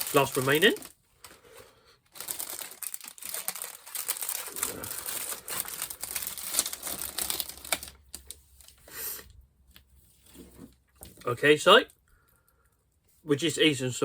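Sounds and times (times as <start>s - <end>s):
plastic wrapper crinkling: 0.0s - 1.5s, 2.1s - 8.9s.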